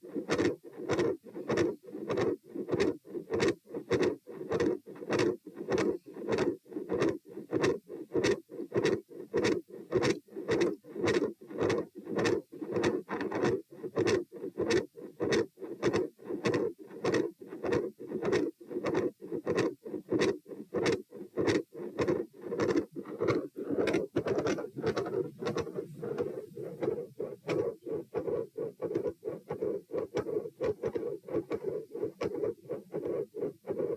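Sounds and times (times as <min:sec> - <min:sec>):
heartbeat through a stethoscope: 0:00.0 - 0:33.9
heart murmur rushing noise: 0:22.8 - 0:33.9.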